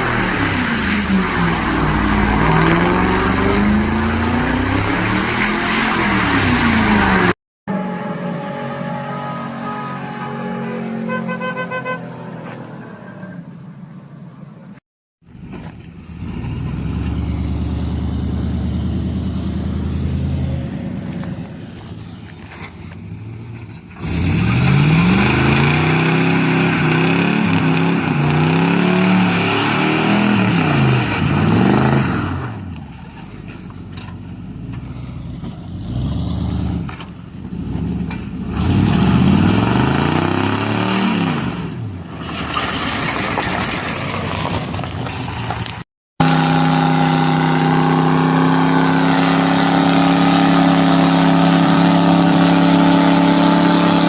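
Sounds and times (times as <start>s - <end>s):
car engine revving: 0.0s - 7.4s, 33.9s - 42.6s, 46.2s - 54.0s.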